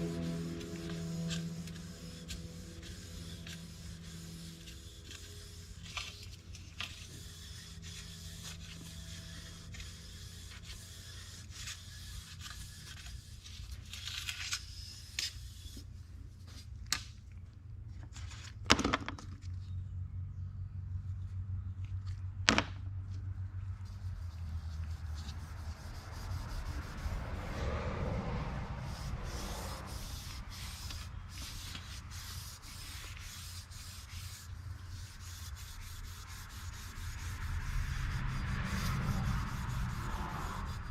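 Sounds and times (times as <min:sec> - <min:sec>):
scraping and rubbing on metal trim: 0:00.0 - 0:16.7, 0:23.8 - 0:27.7, 0:28.6 - 0:40.9
steady low hum: 0:00.0 - 0:18.3.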